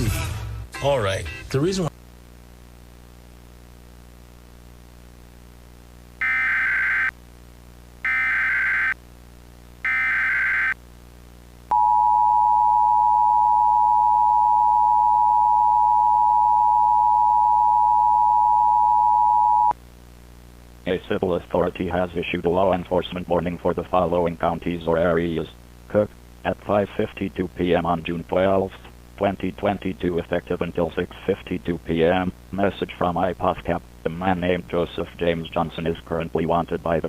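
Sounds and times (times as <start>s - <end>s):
faint hum: 1.6s - 37.0s
two-tone attention signal: 11.7s - 19.7s.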